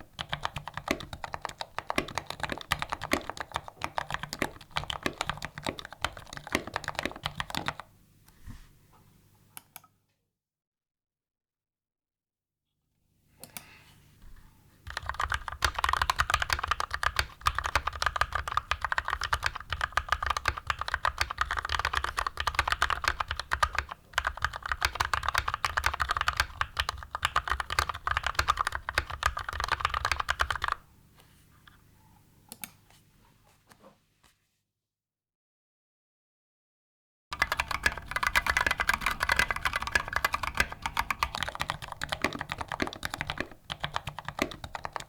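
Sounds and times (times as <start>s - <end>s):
mechanical keyboard typing: 0.1s - 7.9s, 14.9s - 30.8s, 37.4s - 45.0s.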